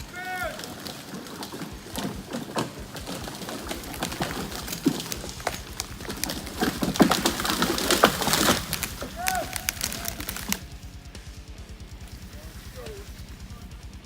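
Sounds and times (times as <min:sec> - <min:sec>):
wood and branches cracking: 0:00.0 - 0:11.0.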